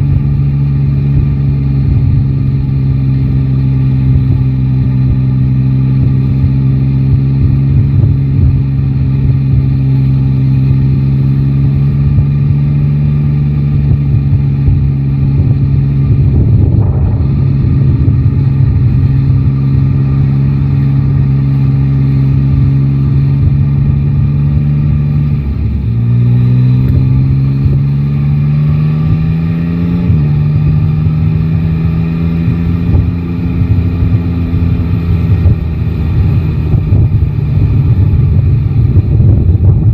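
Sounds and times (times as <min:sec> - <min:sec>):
motorcycle engine cruising: 0:00.0 - 0:39.9
wind rumble on microphone: 0:00.0 - 0:39.9
rush of noise: 0:10.9 - 0:39.9.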